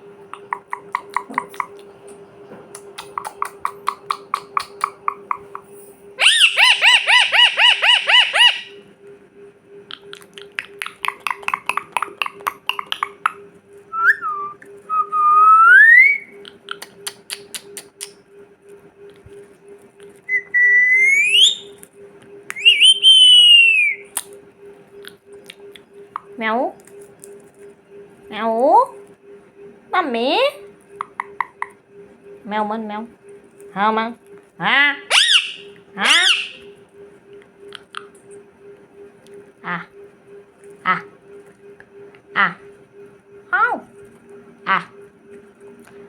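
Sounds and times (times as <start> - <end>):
faint steady hum: 0.0 - 46.0
parrot clicking chirps: 0.2 - 1.9, 2.7 - 8.7, 9.9 - 13.4, 16.0 - 18.2, 31.0 - 31.8, 35.1 - 36.6
parrot whistling: 2.8 - 5.6, 6.2 - 8.8, 10.0 - 17.8, 20.3 - 21.8, 22.6 - 24.2, 35.0 - 36.8.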